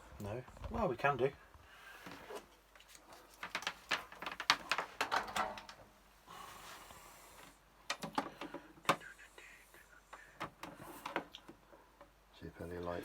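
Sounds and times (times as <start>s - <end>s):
plastic clicks and knocks: 3.4s - 5.8s, 7.9s - 9.0s.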